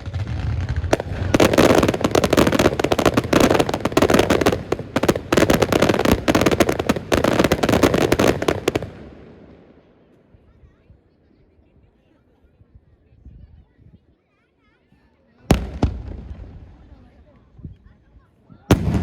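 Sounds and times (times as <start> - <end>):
fireworks crackling: 0.0 - 9.6, 15.5 - 17.5, 18.7 - 19.0.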